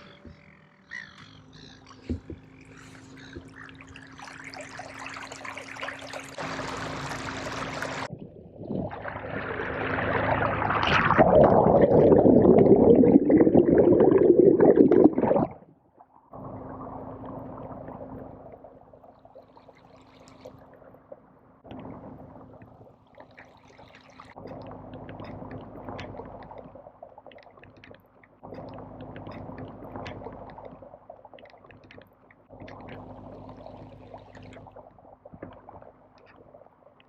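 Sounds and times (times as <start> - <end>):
water lapping against shore: 0.0 - 12.2, 15.2 - 37.0
small splashes: 0.0 - 37.0
faint steady hum: 16.3 - 37.0.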